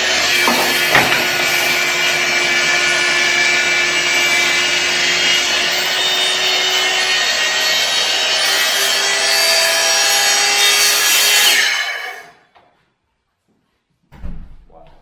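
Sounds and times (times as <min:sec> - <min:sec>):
saw cutting wood: 0:00.0 - 0:12.4
short knock: 0:14.1 - 0:15.0.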